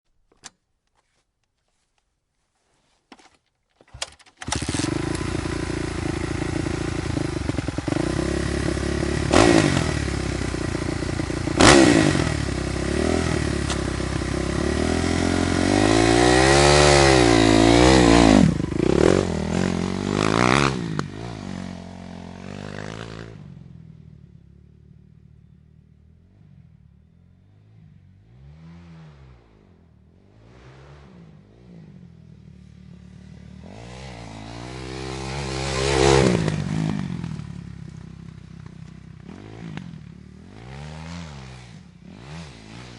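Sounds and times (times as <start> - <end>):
starter clicks: 3.1 - 5.2
dirt bike engine revving: 4.4 - 23.6, 27.4 - 42.9.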